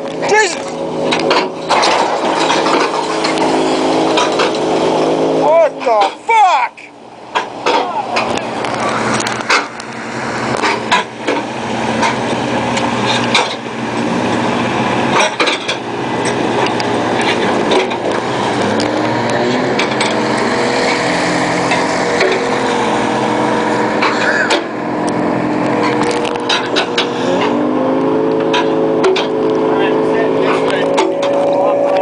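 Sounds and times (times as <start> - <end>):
sharp knocks and clanks: 0.0 - 5.1, 7.3 - 9.9, 10.5 - 14.1, 15.1 - 21.0, 23.9 - 27.6, 28.3 - 29.6, 30.5 - 32.0
boat engine running: 0.0 - 32.0.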